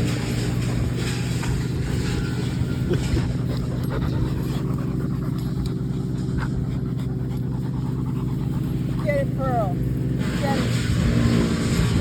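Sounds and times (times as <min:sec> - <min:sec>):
wood chipper engine droning: 0:00.0 - 0:12.0
dog panting: 0:02.8 - 0:10.8.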